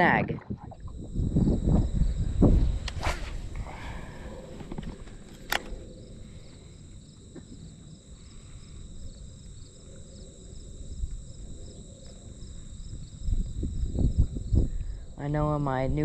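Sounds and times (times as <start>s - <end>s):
insects trilling: 0.7s - 16.0s
sharp click: 5.3s - 5.8s.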